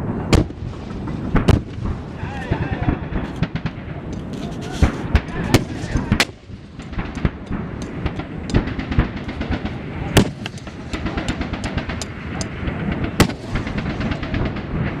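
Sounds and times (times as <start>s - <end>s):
rapid gunfire: 6.9s - 15.0s
loud gunshot reports: 8.6s - 12.0s.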